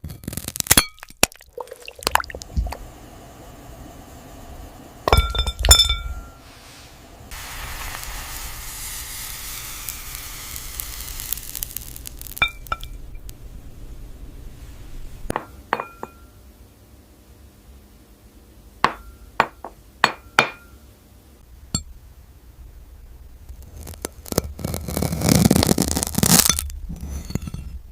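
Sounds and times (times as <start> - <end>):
hissing crackling noise: 0.2 - 15.3, 23.2 - 26.6
glass clinks: 5.1 - 6.4, 15.3 - 16.3.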